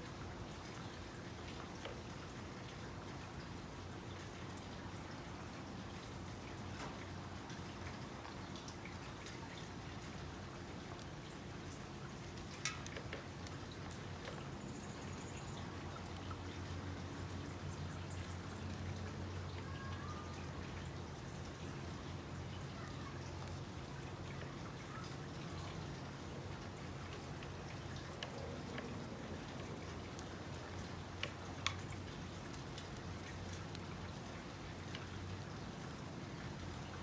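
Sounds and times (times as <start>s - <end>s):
weaving material clicks and crackles: 12.2s - 14.8s.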